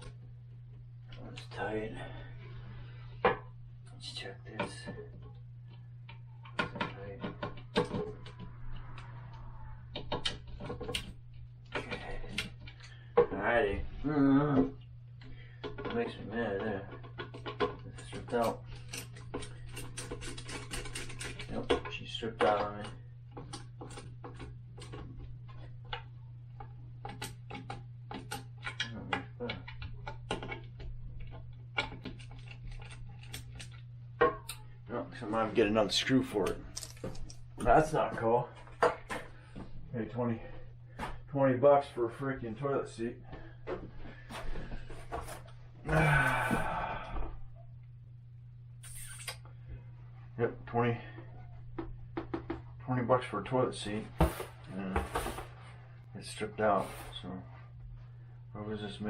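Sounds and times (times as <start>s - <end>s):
low steady hum: 0.0s - 59.0s
hands and tool clicking: 16.9s - 33.8s.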